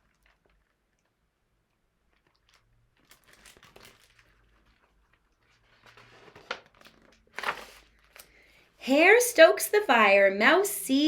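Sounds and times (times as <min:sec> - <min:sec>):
small clicks of book handling: 0:02.1 - 0:08.4
paper rustling: 0:02.2 - 0:08.3.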